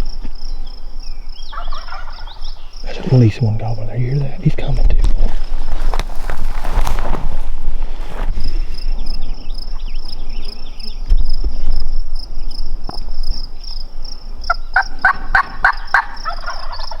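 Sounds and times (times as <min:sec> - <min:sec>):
turkey gobbling: 0:01.5 - 0:03.4, 0:14.5 - 0:17.0.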